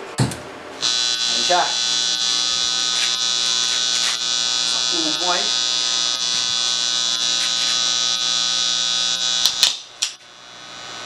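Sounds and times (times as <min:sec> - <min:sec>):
amplifier buzz: 0:00.8 - 0:11.0
crackling clicks: 0:06.3 - 0:08.0, 0:09.3 - 0:10.3.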